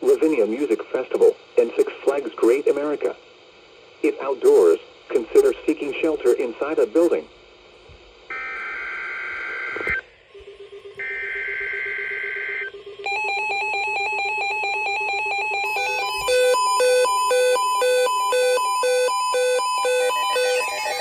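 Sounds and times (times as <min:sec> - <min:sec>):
electronic beeps: 0:08.3 - 0:21.0
pulsing electronic tone: 0:08.3 - 0:21.0.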